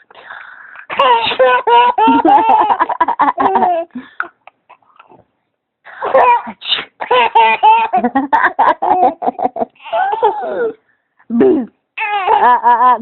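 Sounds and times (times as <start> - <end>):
person laughing: 2.0 - 4.2, 8.0 - 10.7.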